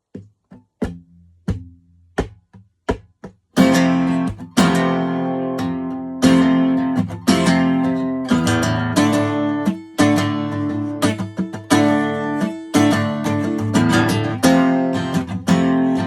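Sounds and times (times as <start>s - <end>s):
acoustic guitar strumming: 3.6s - 16.0s.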